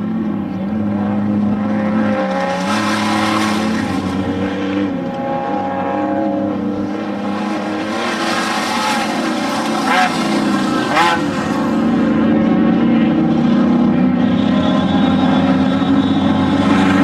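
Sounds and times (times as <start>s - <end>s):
off-road vehicle engines running: 0.0s - 17.0s
engine revving: 0.6s - 17.0s.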